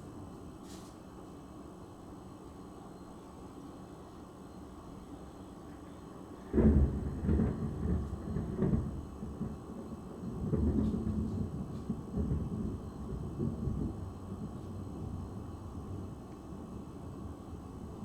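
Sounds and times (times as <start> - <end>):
thunder crack and rumble: 6.4 - 18.0.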